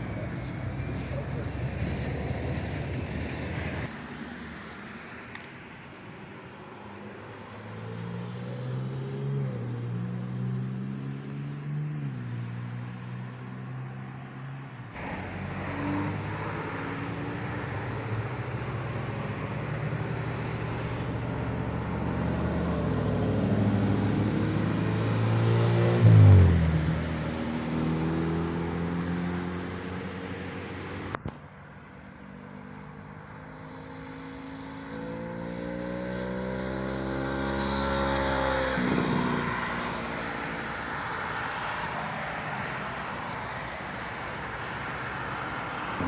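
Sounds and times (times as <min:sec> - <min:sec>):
vehicle revving and passing: 0:00.0 - 0:04.5, 0:07.4 - 0:31.3, 0:32.0 - 0:43.6
car engines accelerating past: 0:07.5 - 0:31.2, 0:32.1 - 0:43.6.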